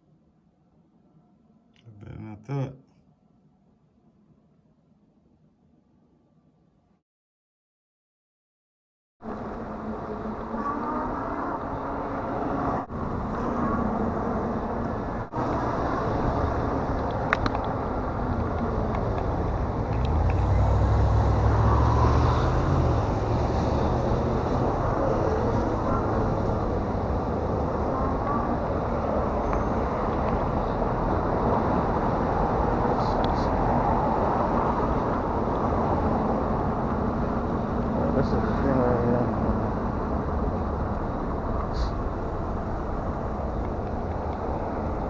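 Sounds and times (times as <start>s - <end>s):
road noise: 9.2s - 45.0s.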